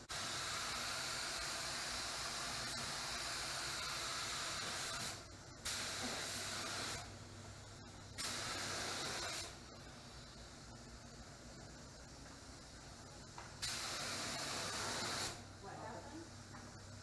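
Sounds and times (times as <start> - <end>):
paint spray gun hissing: 0.1 - 7.0, 8.2 - 9.5, 13.6 - 15.4.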